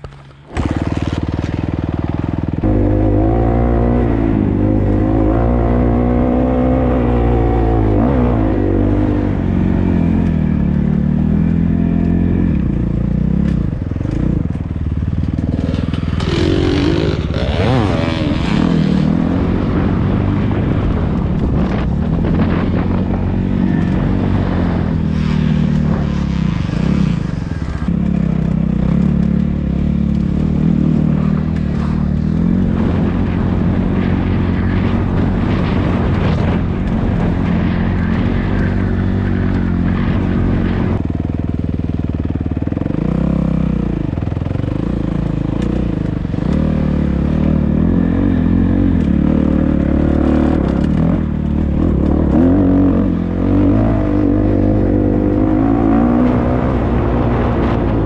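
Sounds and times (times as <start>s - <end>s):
dirt bike engine revving: 0.0s - 41.0s.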